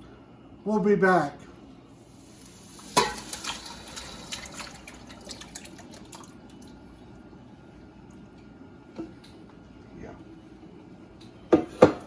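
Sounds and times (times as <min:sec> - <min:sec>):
food sizzling in a hot pan: 0:02.1 - 0:04.3.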